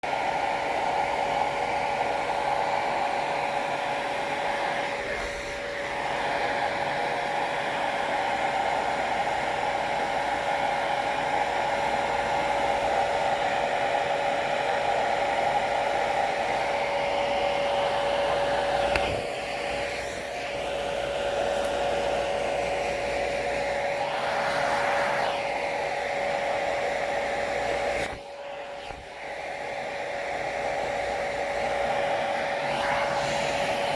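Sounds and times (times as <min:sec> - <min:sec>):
hair dryer running: 0:00.0 - 0:33.9.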